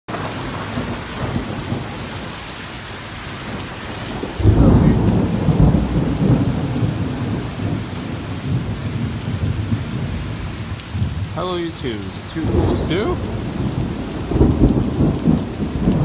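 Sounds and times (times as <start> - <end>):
steady rain: 0.1 - 16.0
thunder clap and rumble: 0.1 - 16.0.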